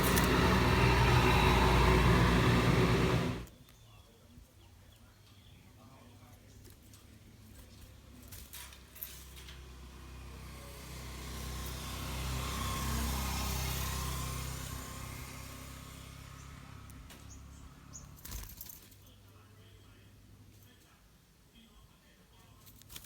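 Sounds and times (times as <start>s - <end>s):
vehicle passing by: 0.0s - 3.5s, 9.4s - 18.2s.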